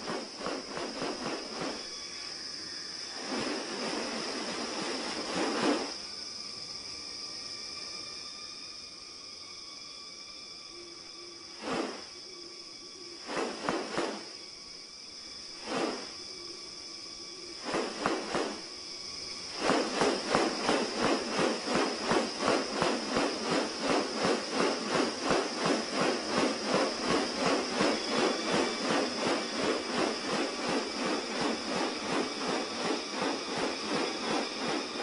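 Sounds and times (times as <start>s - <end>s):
rasping swishes: 0.0s - 1.8s, 3.2s - 5.9s, 11.6s - 12.1s, 13.2s - 14.3s, 15.6s - 16.1s, 17.6s - 18.6s, 19.6s - 35.0s
insects droning: 0.0s - 35.0s.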